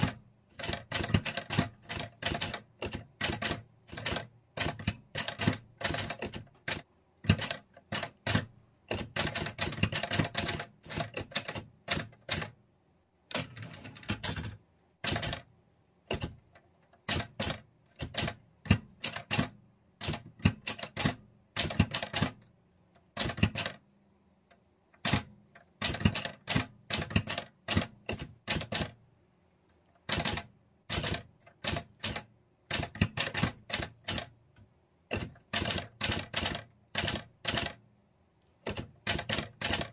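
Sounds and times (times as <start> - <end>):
typewriter key strikes: 0.0 - 12.5, 13.3 - 15.4, 16.1 - 16.4, 17.0 - 22.4, 23.2 - 23.8, 25.0 - 28.9, 30.0 - 34.3, 35.1 - 37.8, 38.6 - 39.9.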